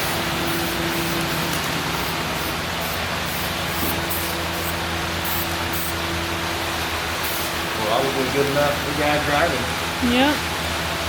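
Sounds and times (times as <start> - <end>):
spray paint hissing: 0.0 - 6.0, 7.2 - 7.6
steady electric hum: 0.0 - 11.0.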